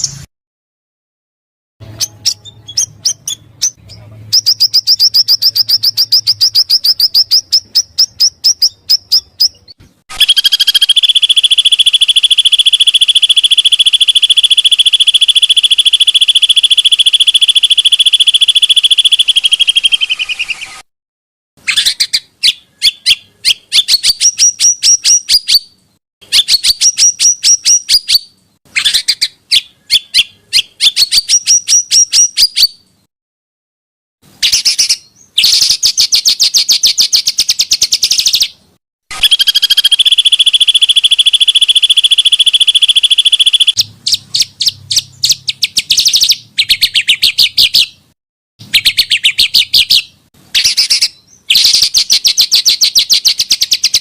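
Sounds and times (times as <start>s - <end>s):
songbirds trilling: 2.0s - 20.8s
rapid bird chattering: 2.2s - 20.8s, 39.2s - 47.8s.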